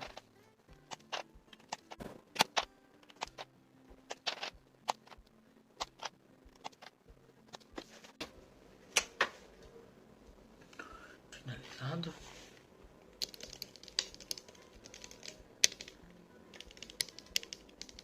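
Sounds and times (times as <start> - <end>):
keyboard parts clicking into place: 0.0 - 8.3, 13.2 - 18.0.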